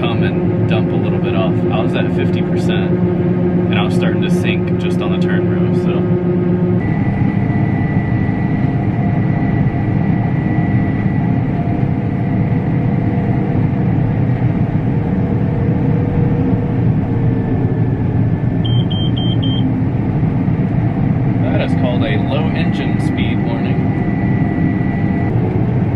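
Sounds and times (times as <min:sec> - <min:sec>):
combine harvester droning: 0:00.0 - 0:25.9
thin high whine: 0:21.5 - 0:25.4.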